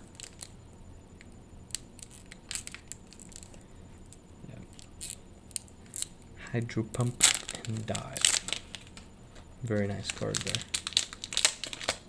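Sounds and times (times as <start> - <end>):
foil wrapper crinkling: 0.0 - 0.5, 1.7 - 3.6, 7.0 - 9.1, 9.7 - 12.0.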